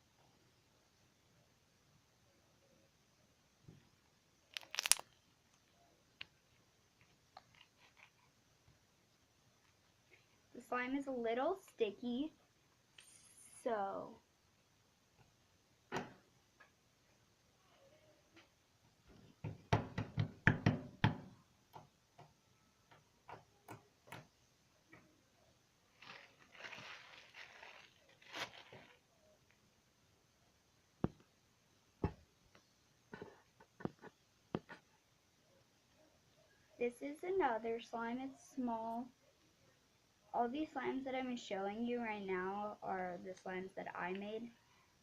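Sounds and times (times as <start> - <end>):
slime clicking and popping: 4.5 - 5.1.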